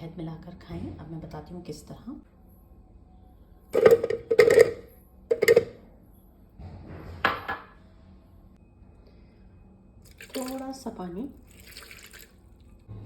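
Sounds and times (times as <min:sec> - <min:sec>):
kitchen utensils clattering: 0:03.8 - 0:05.7.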